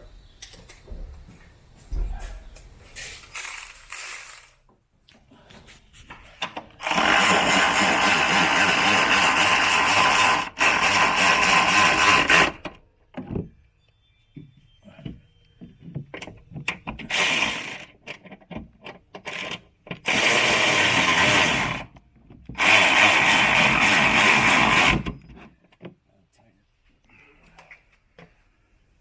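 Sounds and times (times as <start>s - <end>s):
power tool running: 6.8s - 12.7s, 17.1s - 17.9s, 20.1s - 21.9s, 22.6s - 25.2s
clicks and knocks of parts: 17.8s - 20.1s.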